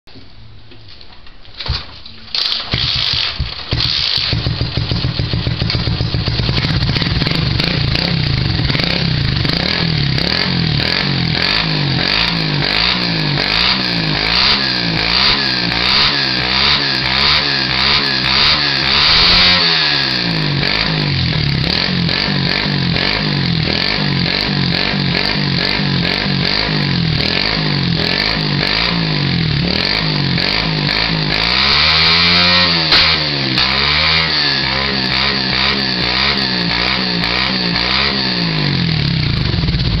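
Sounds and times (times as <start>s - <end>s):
motorcycle engine revving: 2.4s - 40.0s
exhaust backfire pops: 2.6s - 9.8s, 32.6s - 33.8s.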